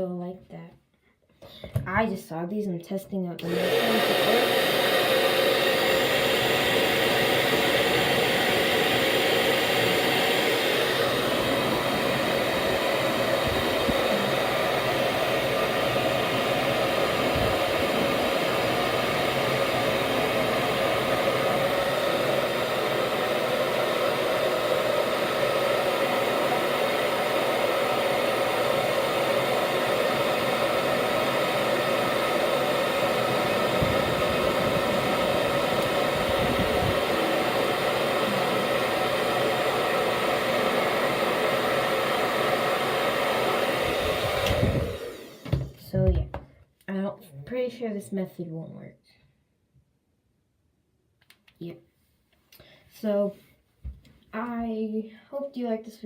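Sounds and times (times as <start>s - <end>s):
hair dryer running: 3.4s - 46.4s.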